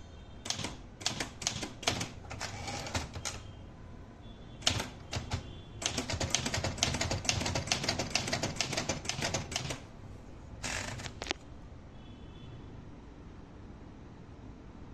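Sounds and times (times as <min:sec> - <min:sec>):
typewriter carriage return: 0:00.5 - 0:03.4, 0:04.6 - 0:09.9, 0:10.6 - 0:11.4
typewriter key clacks: 0:00.5 - 0:03.4, 0:04.6 - 0:09.8.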